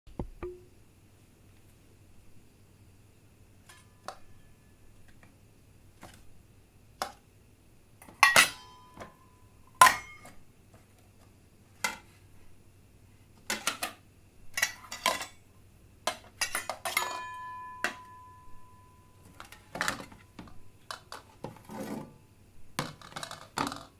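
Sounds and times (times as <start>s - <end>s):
glasses and plates clinking: 8.2s - 10.3s, 16.4s - 20.2s.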